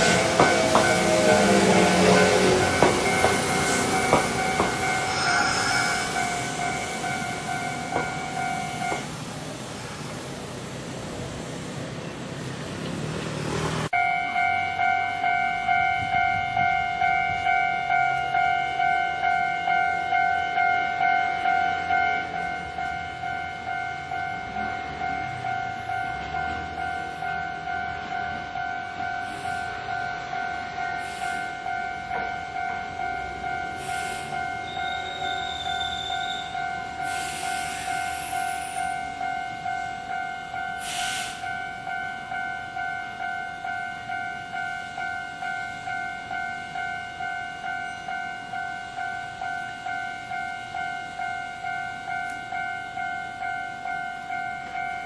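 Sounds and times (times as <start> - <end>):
level crossing bell clanging: 0.0 - 9.2
train rumbling: 0.0 - 55.0
short hissing bursts: 5.1 - 6.2, 37.0 - 38.8, 40.8 - 41.4.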